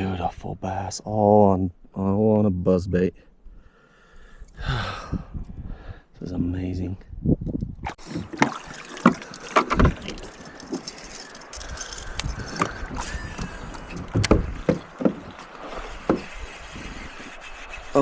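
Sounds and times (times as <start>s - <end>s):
light water noise: 7.8s - 18.0s
knocks and taps on kayak: 13.4s - 15.4s.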